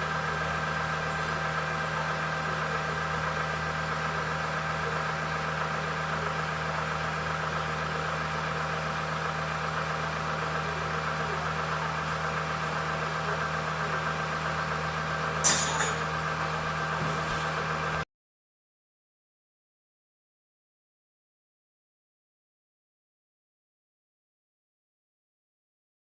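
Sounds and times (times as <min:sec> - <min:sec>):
lathe running with mechanical hum: 0:00.0 - 0:18.0.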